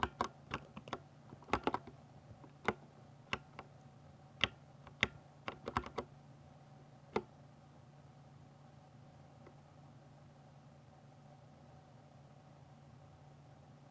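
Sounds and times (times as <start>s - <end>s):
mechanical keyboard typing: 0.0s - 3.7s, 4.4s - 6.1s.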